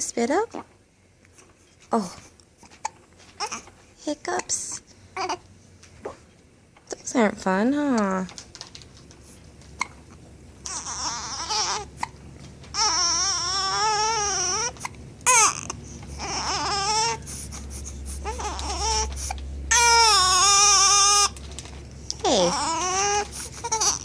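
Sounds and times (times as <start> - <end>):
infant crying: 3.4 - 3.7, 10.6 - 21.4, 22.2 - 24.0.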